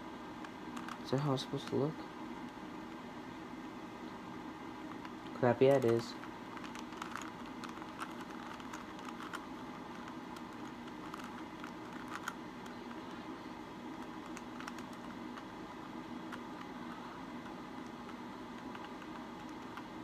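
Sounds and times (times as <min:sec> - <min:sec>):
faint steady hum: 0:00.0 - 0:20.0
plastic puzzle cube clicking: 0:00.8 - 0:01.0, 0:05.0 - 0:13.1, 0:14.0 - 0:15.5, 0:17.4 - 0:19.9.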